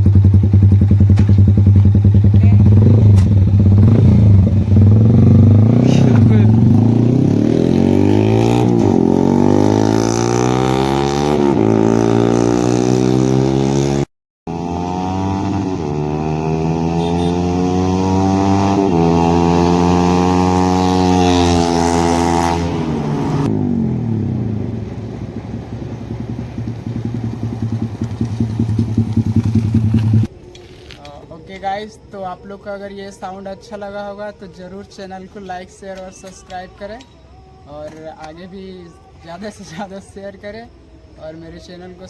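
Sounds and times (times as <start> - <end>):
motorcycle engine revving: 0.0 - 30.3.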